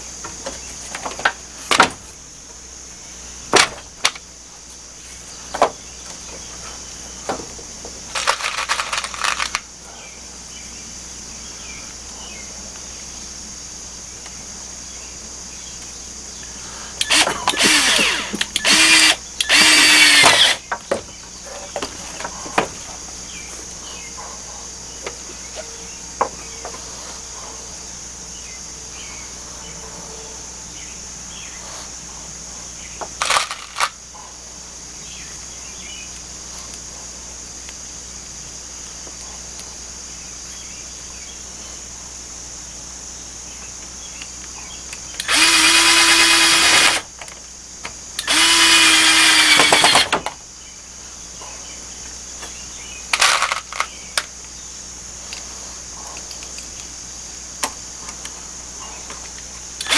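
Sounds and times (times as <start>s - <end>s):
high insect drone: 0.0s - 59.9s
power drill whining: 17.0s - 20.6s, 45.2s - 47.1s, 48.2s - 50.2s.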